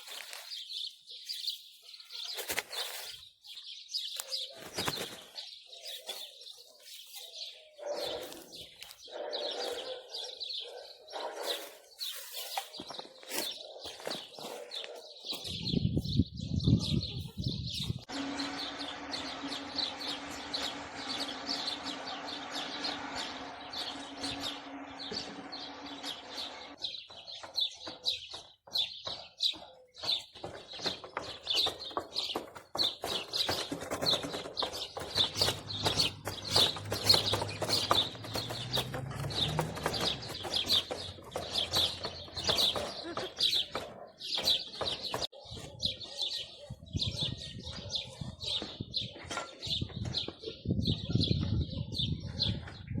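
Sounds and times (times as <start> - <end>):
small birds chirping: 0.0 - 53.0
sharp ticks and knocks: 19.8 - 45.3.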